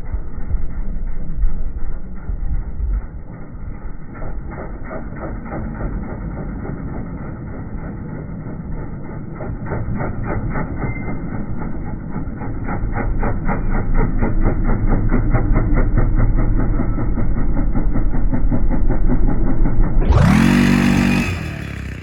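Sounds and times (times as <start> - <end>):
slowed engine pulsing rumble: 0.0 - 22.0.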